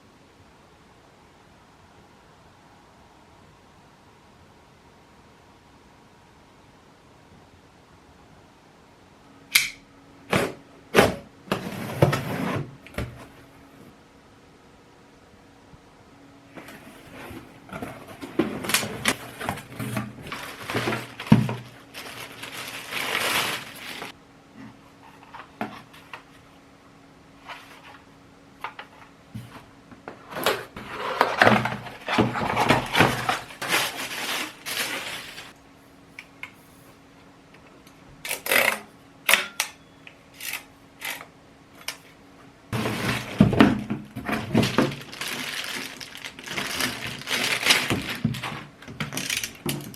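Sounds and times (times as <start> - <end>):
box scraping and knocking: 11.0 - 13.2, 30.5 - 35.5, 42.8 - 45.0
packaging rustling: 16.6 - 24.2, 30.4 - 35.6, 42.8 - 49.9.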